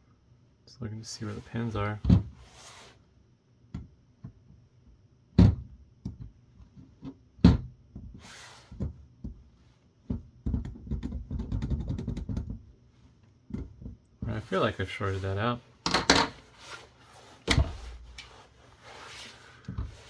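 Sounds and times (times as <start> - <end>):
rapid clicking and rattling: 10.5 - 12.6.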